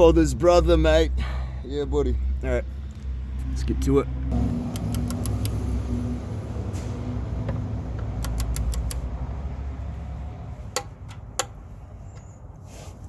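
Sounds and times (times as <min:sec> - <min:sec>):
torque wrench clicks: 0:04.7 - 0:05.6, 0:08.2 - 0:09.1.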